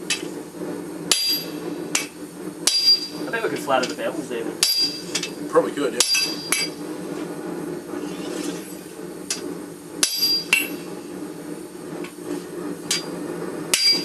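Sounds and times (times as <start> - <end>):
steady low hum: 0.0 - 14.0
hammer striking steel on anvil: 0.1 - 0.3, 1.1 - 3.2, 4.6 - 5.4, 6.0 - 6.8, 10.0 - 10.8, 12.9 - 13.1, 13.7 - 14.0.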